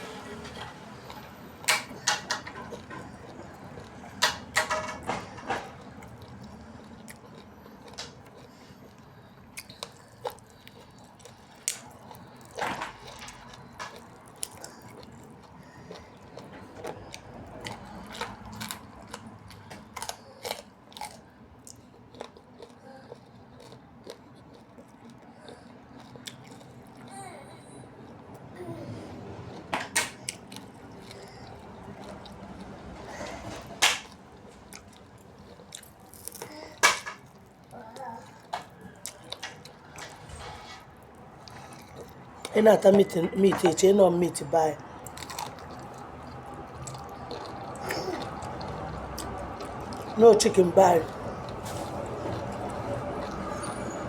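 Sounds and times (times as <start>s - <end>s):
crunchy bites and chewing: 5.6s - 27.1s, 30.0s - 37.7s, 45.0s - 50.2s.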